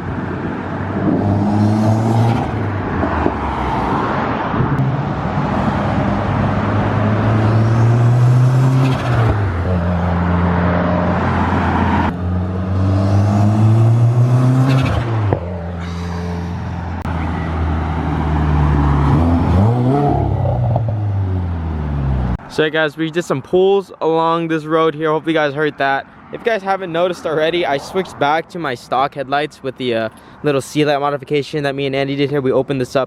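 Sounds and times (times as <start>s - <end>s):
turbocharged car engine accelerating: 0.9s - 22.4s.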